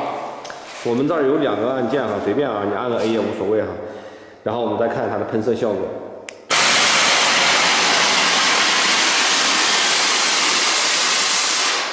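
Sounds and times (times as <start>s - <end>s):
gas jet hissing: 6.5s - 11.9s.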